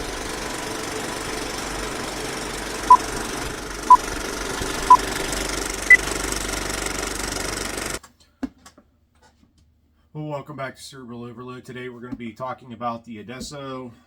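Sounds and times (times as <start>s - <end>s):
steady mechanical rumble: 0.0s - 8.0s.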